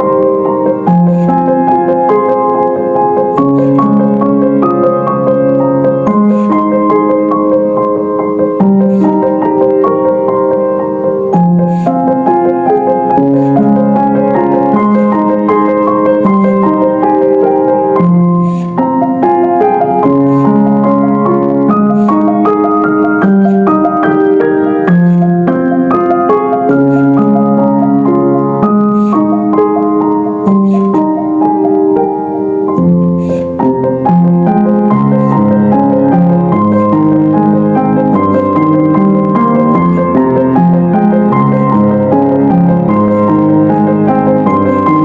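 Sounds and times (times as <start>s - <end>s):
slow gentle piano music: 0.0s - 45.0s.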